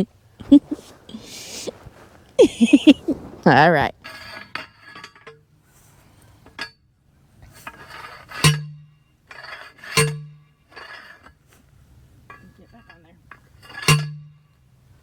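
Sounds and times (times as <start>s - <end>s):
metal fence hardware clinking: 7.6s - 8.7s, 9.3s - 11.3s, 12.3s - 14.3s
sharp knocks with low ring: 8.4s - 8.9s, 13.8s - 14.4s.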